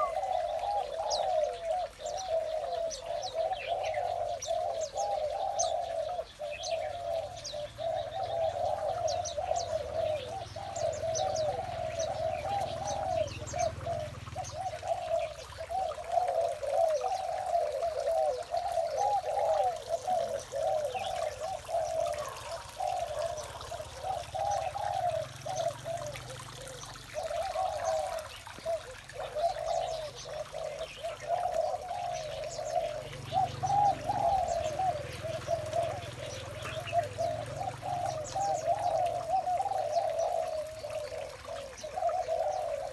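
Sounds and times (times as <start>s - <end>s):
doves cooing: 0.0s - 42.9s
small birds chirping: 0.0s - 42.9s.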